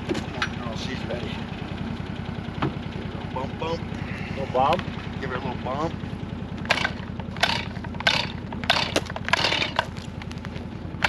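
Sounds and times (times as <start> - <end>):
side-by-side engine running: 0.0 - 11.0
loud crunching or scraping: 6.7 - 11.0.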